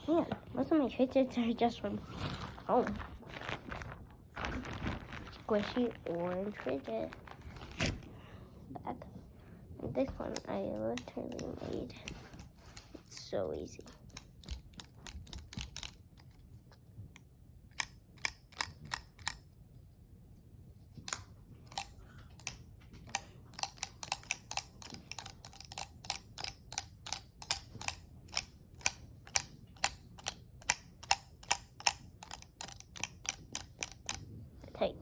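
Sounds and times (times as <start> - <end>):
fidget toy clicking: 10.3 - 12.5, 17.7 - 19.4, 21.1 - 34.2.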